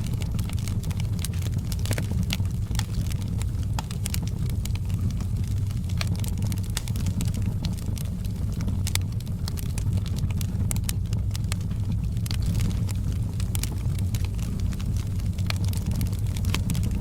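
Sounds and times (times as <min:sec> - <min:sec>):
fire low rumble: 0:00.0 - 0:17.0
wood fire crackling and popping: 0:00.0 - 0:17.0.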